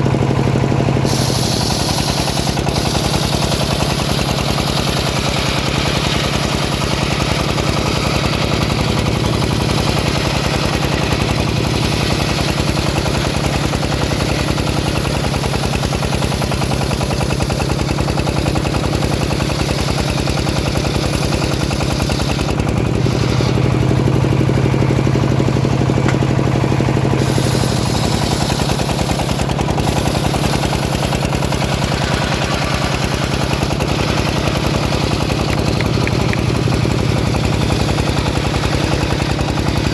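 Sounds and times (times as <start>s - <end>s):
sawmill engine running: 0.0s - 39.9s
high hiss: 1.1s - 3.9s.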